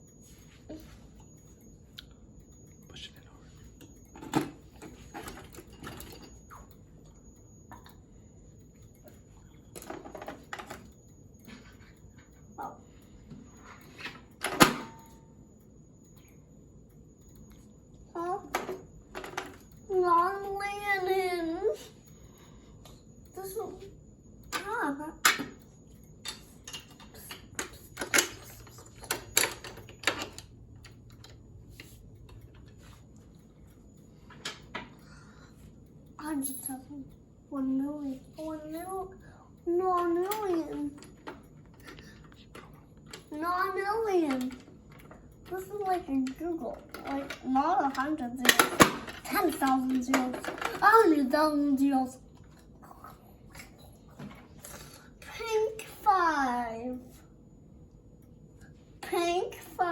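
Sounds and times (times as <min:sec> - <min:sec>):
fire alarm pull station clicking: 0:13.8 - 0:15.2, 0:24.4 - 0:32.8, 0:40.0 - 0:52.0.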